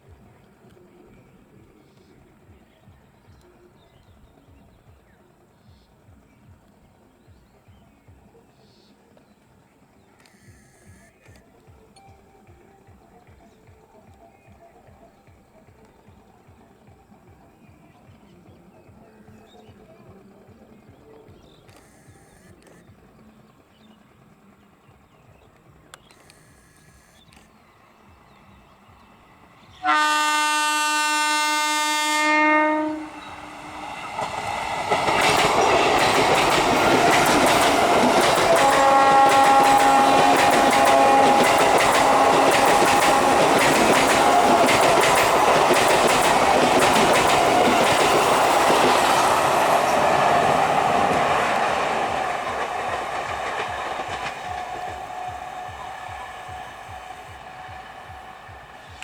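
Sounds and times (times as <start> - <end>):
train horn: 29.8 - 33.8, 35.5 - 48.4.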